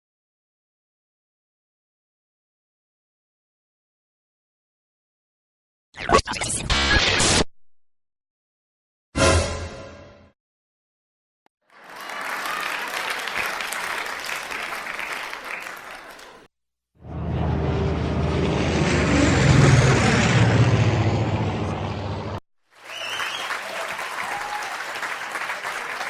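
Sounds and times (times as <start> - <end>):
low droning rumble: 17.1 - 22.4.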